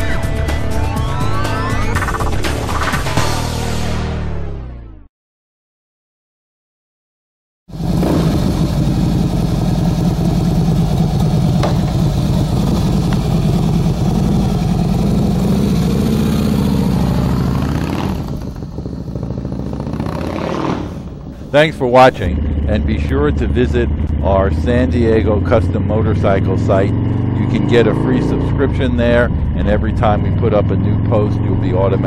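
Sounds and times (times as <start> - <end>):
motorcycle engine running: 7.7 - 32.0.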